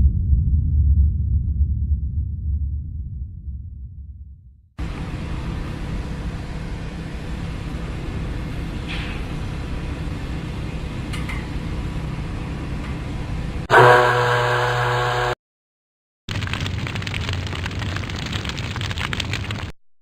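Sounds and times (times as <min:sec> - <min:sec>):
faint brief higher sounds: 0:13.7 - 0:15.4
machine rumbling: 0:13.7 - 0:15.4.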